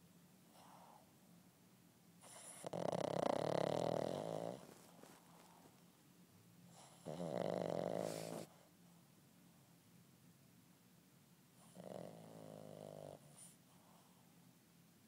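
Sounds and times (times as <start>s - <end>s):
puppy snoring: 0.5s - 1.0s, 2.2s - 5.8s, 6.7s - 8.6s, 11.6s - 14.2s.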